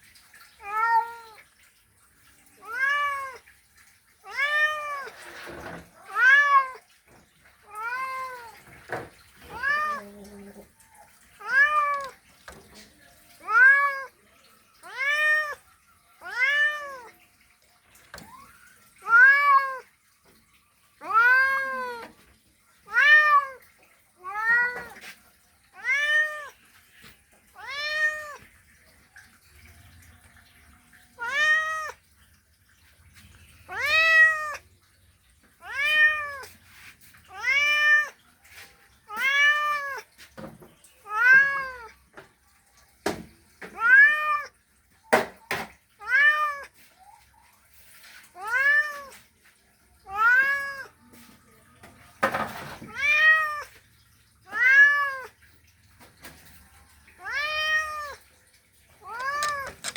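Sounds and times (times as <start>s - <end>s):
cat meowing: 0.6s - 1.4s, 2.6s - 3.5s, 4.2s - 6.9s, 7.6s - 12.2s, 13.3s - 17.2s, 18.2s - 19.9s, 21.0s - 22.2s, 22.8s - 23.6s, 24.2s - 25.1s, 25.7s - 26.6s, 27.5s - 28.5s, 31.1s - 32.0s, 33.7s - 34.7s, 35.6s - 36.6s, 37.2s - 38.2s, 39.1s - 40.1s, 41.0s - 42.0s, 43.7s - 44.5s, 46.0s - 46.8s, 48.4s - 49.2s, 50.0s - 51.0s, 52.3s - 53.8s, 54.4s - 55.4s, 57.1s - 58.2s, 59.0s - 59.9s.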